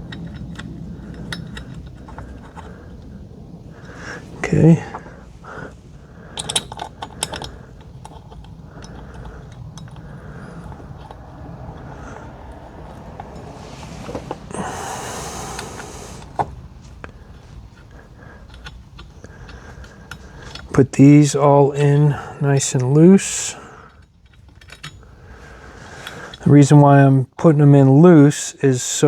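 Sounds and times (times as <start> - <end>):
small metal clicks: 0.0 - 3.2, 4.9 - 14.6, 15.2 - 23.0, 23.6 - 26.5
rustling: 0.0 - 20.9.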